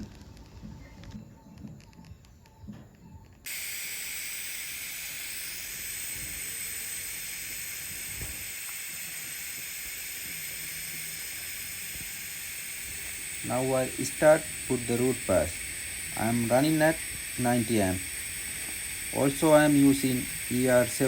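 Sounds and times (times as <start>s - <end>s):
welding arc hissing: 3.4s - 21.0s.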